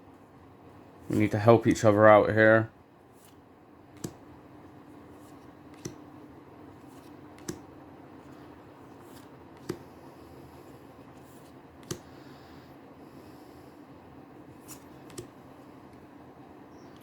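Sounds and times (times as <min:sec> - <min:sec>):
faint room hum: 0:00.0 - 0:17.0
cards snapping and clicking: 0:04.0 - 0:04.2, 0:05.3 - 0:06.0, 0:06.8 - 0:07.7, 0:09.1 - 0:09.9, 0:11.8 - 0:12.1, 0:14.6 - 0:15.4.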